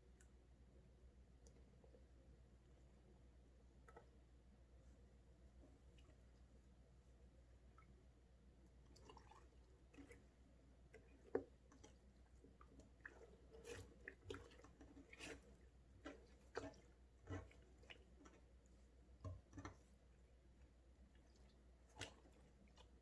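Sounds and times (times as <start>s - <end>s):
slime squelching: 8.8s - 23.0s.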